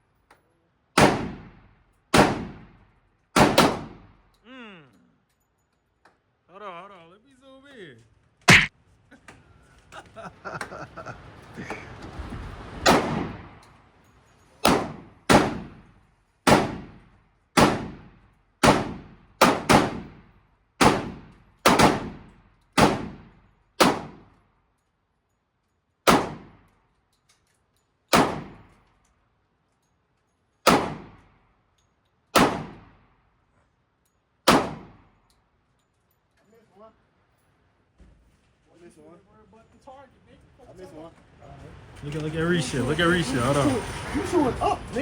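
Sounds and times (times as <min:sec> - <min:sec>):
pistol shots with ringing echo: 0:01.0 - 0:02.8, 0:03.4 - 0:04.2, 0:12.9 - 0:13.6, 0:14.6 - 0:24.3, 0:26.1 - 0:26.7, 0:28.1 - 0:28.7, 0:30.6 - 0:31.3, 0:32.4 - 0:33.0, 0:34.4 - 0:35.1.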